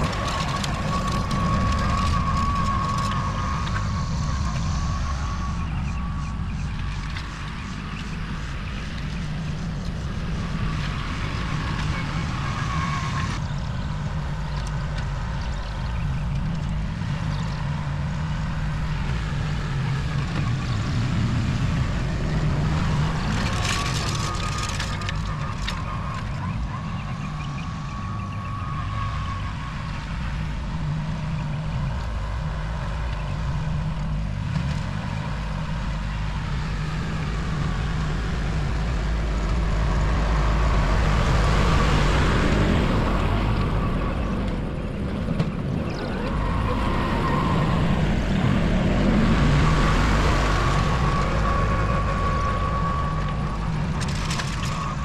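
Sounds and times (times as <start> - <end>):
rocks rattling and scraping: 0.0 - 4.8, 22.0 - 27.6, 48.2 - 55.0
machine engine running: 0.0 - 55.0.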